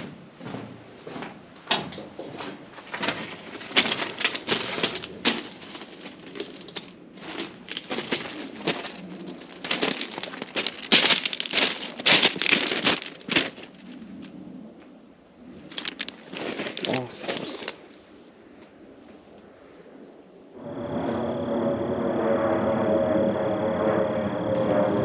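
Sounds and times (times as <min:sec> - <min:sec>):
footsteps on dry grass and leaves: 0:00.0 - 0:01.3, 0:02.4 - 0:14.0, 0:15.6 - 0:17.9.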